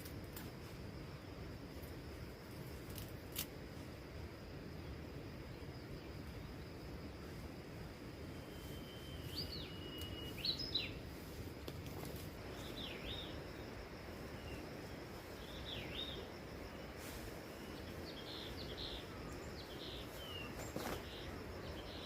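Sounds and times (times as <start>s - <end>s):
faint high hum: 0.0s - 22.0s
low background noise: 0.0s - 22.0s
bird chirping: 8.3s - 11.0s, 12.5s - 16.3s, 17.5s - 22.0s.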